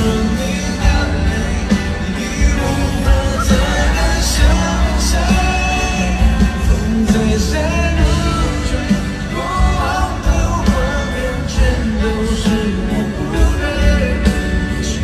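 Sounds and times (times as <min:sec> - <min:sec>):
live pop band with singer: 0:00.0 - 0:15.0.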